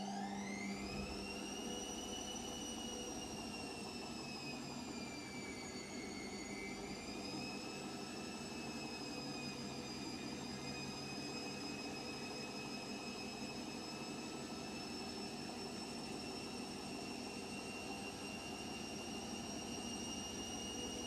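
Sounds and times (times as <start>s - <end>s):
washing machine motor whine: 0.0s - 21.0s.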